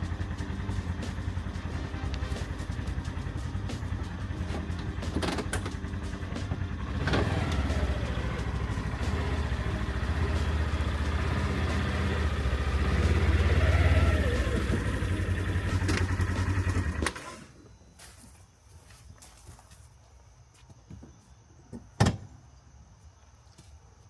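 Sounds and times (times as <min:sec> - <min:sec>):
tractor diesel engine rumbling: 0:00.0 - 0:17.6.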